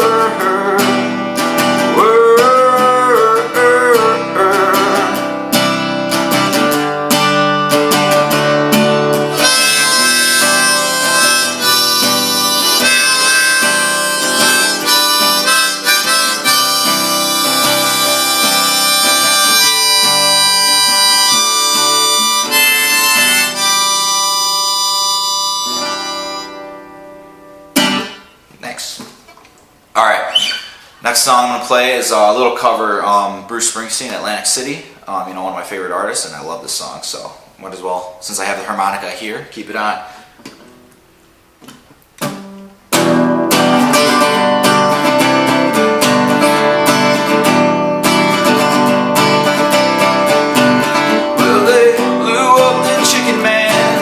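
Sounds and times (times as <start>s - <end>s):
harmonica: 0.0s - 27.2s, 43.1s - 54.0s
strummed acoustic guitar: 0.0s - 28.4s, 41.7s - 54.0s.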